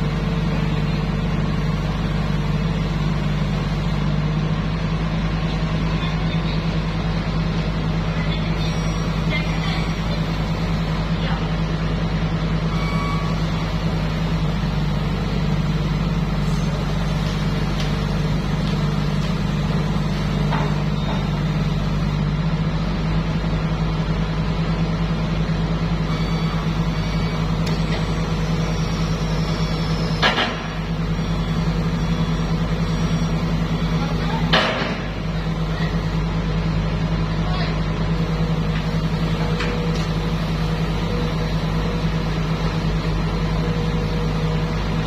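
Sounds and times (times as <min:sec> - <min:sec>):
diesel engine running: 0:00.0 - 0:45.0.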